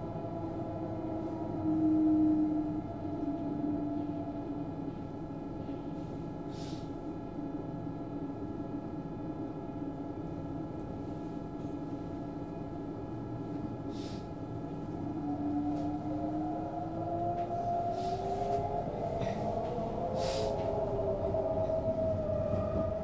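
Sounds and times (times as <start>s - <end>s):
train rumble: 0.0s - 23.0s.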